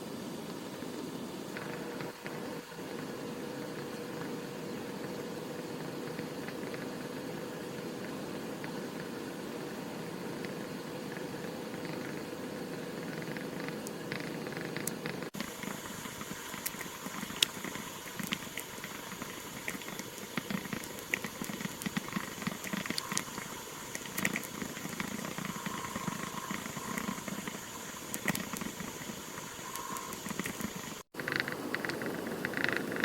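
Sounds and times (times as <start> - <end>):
pen nib ticks: 29.7 - 33.0.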